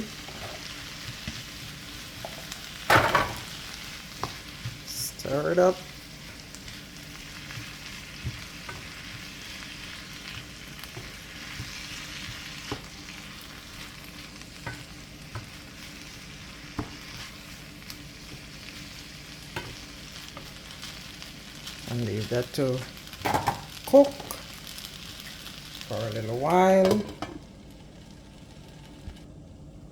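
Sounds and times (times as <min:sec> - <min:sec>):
food sizzling in a frying pan: 0:00.0 - 0:29.3.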